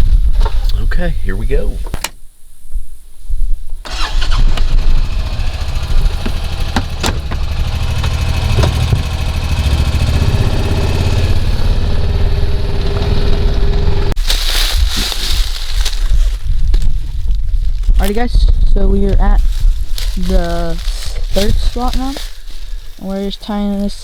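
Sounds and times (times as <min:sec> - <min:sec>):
vehicle engine starting and running: 0:03.9 - 0:14.2
sharp knocks or rattles: 0:05.5 - 0:12.2.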